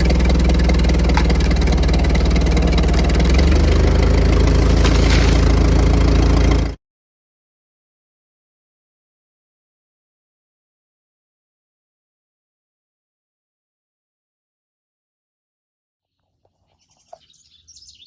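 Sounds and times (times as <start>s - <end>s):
engine running: 0.0s - 6.8s.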